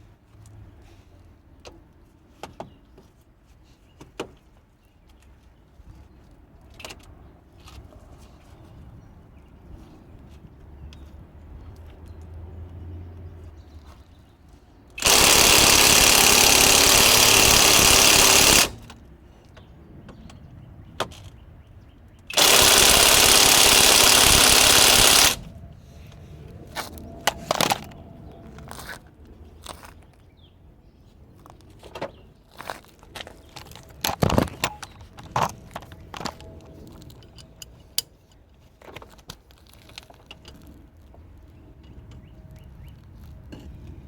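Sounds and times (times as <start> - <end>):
impact wrench running: 15.0 - 19.0, 22.3 - 25.5.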